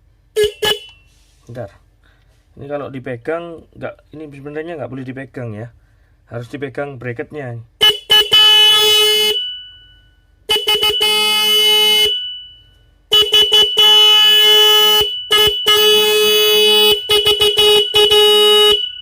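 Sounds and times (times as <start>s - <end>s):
electric horn honking: 0.4s - 1.1s, 7.8s - 9.5s, 10.5s - 12.2s, 13.1s - 19.0s.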